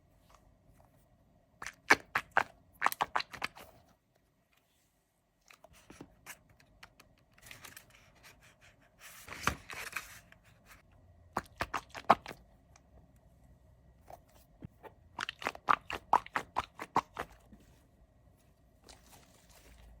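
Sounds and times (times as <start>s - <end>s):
hands handling squishy toys: 18.5s - 20.0s.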